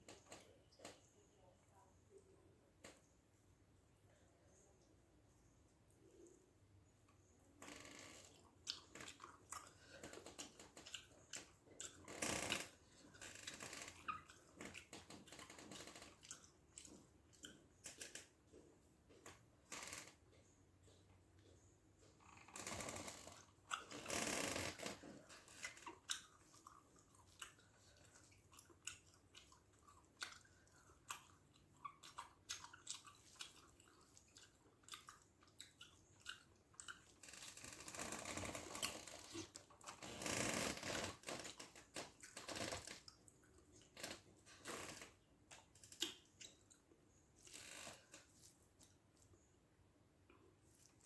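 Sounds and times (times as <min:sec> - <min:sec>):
person chewing: 0:08.4 - 0:19.3, 0:20.8 - 0:49.5.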